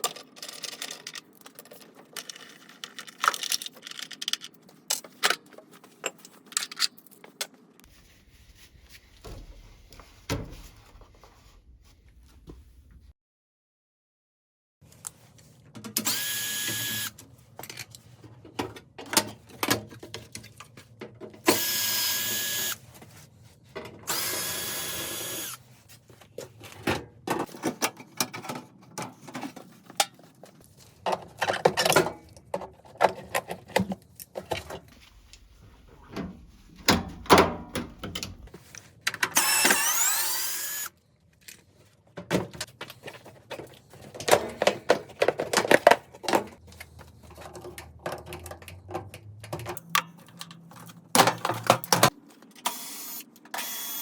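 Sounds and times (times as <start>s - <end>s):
clicks and knocks of parts: 0.0s - 7.6s, 41.4s - 53.6s
power drill whirring: 16.0s - 17.2s, 21.5s - 22.8s, 24.1s - 25.6s, 39.3s - 40.9s, 52.7s - 54.0s.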